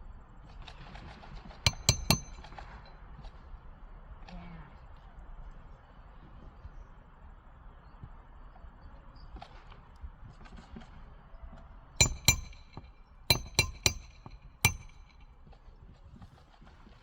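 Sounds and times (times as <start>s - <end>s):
hammer strikes on metal: 1.7s - 3.0s, 12.0s - 15.4s.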